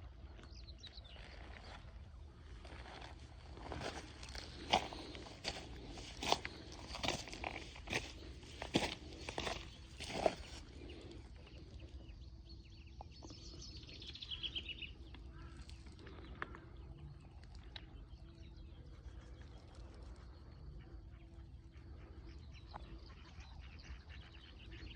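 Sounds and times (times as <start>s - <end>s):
crunching sounds: 2.5s - 11.7s
fainter bird calls: 13.3s - 24.9s.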